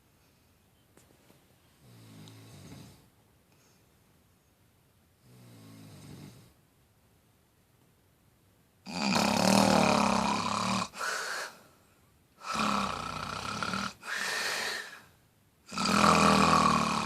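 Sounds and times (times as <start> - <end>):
person snoring: 8.9 - 11.6, 12.4 - 15.1, 15.7 - 17.0.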